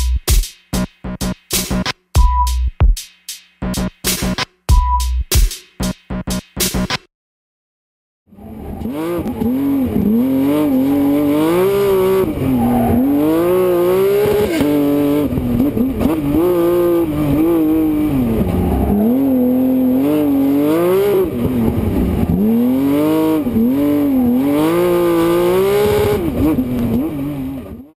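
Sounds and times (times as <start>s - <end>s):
rally car engine revving through gears: 8.3s - 27.9s.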